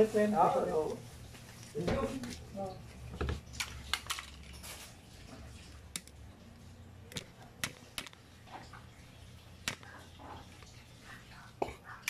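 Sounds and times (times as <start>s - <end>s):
tools clicking and tapping: 5.9s - 6.2s, 7.1s - 8.7s.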